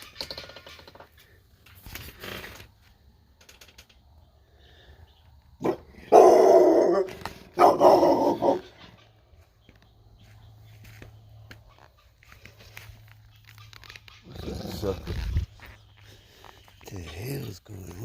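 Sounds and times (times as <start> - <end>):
guinea fowl alarm calls: 10.2 - 14.5.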